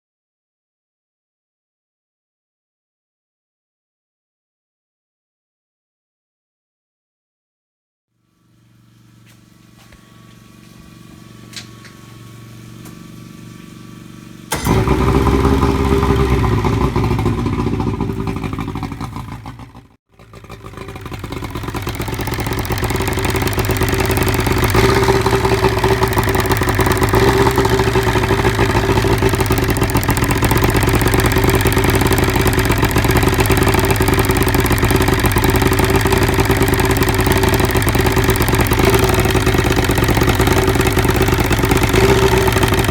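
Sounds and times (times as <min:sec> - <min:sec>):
outboard motor running: 0:08.5 - 0:42.9.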